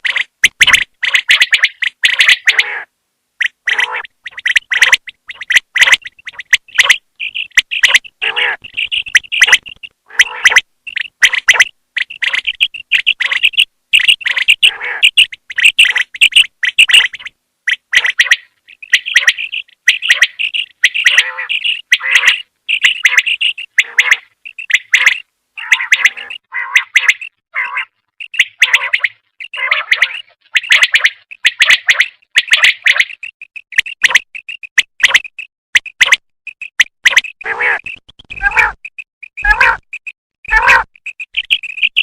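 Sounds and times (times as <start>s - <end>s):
quail chirping call: 0.0s - 35.4s, 36.0s - 42.0s.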